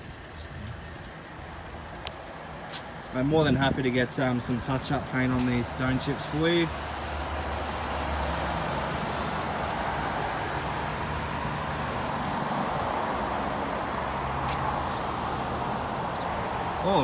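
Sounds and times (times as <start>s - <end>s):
road traffic noise: 0.0s - 17.0s.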